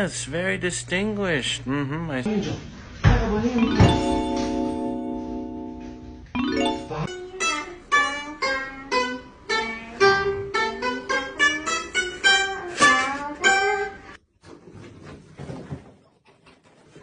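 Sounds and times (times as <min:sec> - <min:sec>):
plucked string instrument melody: 0:03.6 - 0:14.0.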